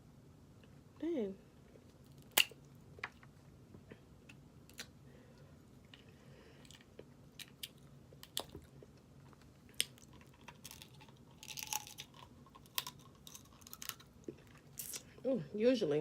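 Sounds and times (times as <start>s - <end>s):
crab shell cracking: 2.1s - 3.1s, 9.7s - 15.0s
chewing: 6.6s - 15.1s.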